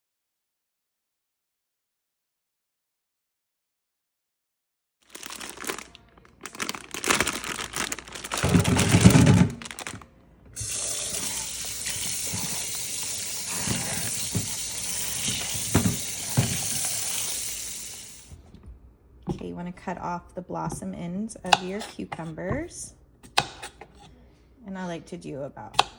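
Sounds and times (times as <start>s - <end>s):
water splashing into sink: 10.6s - 18.3s
tap running steady stream: 10.6s - 18.4s.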